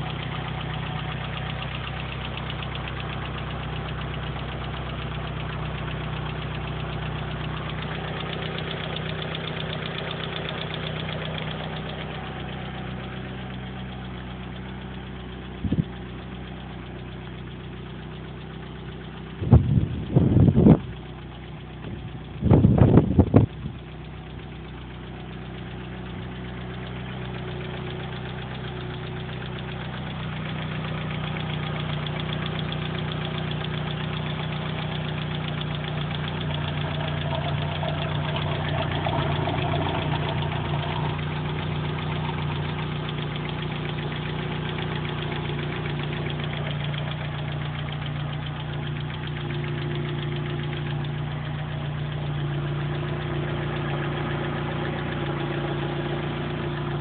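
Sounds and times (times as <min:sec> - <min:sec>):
car engine idling: 0:00.0 - 0:57.0.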